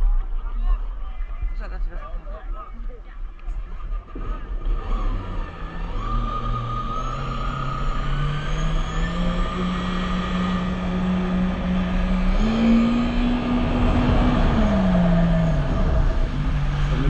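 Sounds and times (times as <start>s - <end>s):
wind: 0.0s - 17.0s
jet ski engine under throttle: 4.0s - 17.0s.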